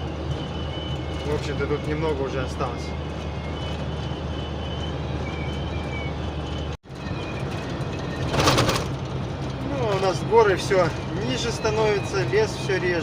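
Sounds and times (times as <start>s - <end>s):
truck engine and road drone: 0.0s - 13.0s
loud rattle: 8.1s - 9.2s.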